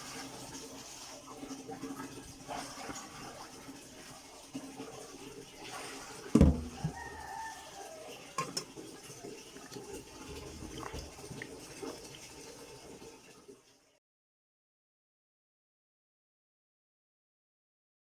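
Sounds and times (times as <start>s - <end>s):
bowls and utensils clinking: 6.4s - 8.8s.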